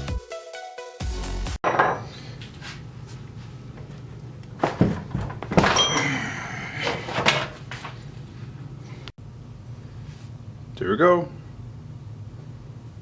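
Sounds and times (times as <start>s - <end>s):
low shop hum: 1.6s - 13.0s
metallic clunks and clanks: 4.6s - 6.2s.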